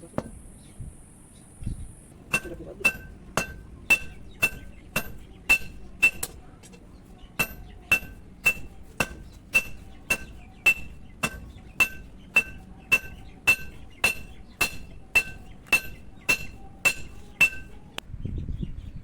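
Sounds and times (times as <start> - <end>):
hammer ringing on anvil: 2.3 - 6.4, 7.4 - 17.8.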